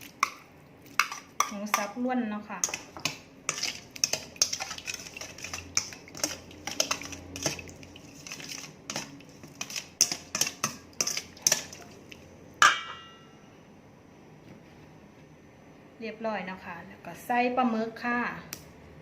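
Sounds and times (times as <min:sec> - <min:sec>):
metal utensil tapping a pot: 0:01.0 - 0:01.9, 0:09.6 - 0:11.8, 0:12.6 - 0:13.3
loud ringing clang: 0:12.6 - 0:13.5.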